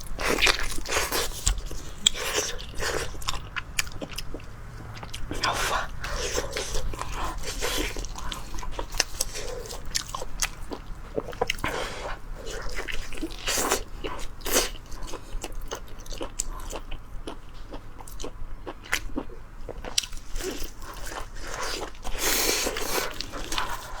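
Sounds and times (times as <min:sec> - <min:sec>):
person biting and chewing: 0:00.0 - 0:11.8.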